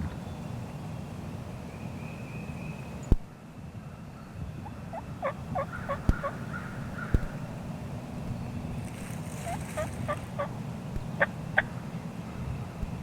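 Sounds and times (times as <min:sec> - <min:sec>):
turkey gobbling: 0:04.6 - 0:07.5, 0:09.3 - 0:10.6, 0:11.2 - 0:11.7.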